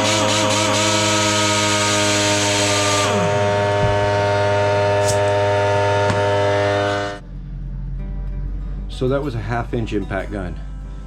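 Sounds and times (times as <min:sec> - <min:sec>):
air compressor humming: 0:00.0 - 0:07.6.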